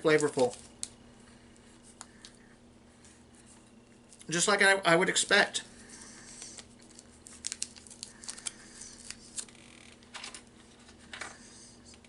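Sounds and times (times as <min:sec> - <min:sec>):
plastic package crinkling: 0:06.3 - 0:10.4.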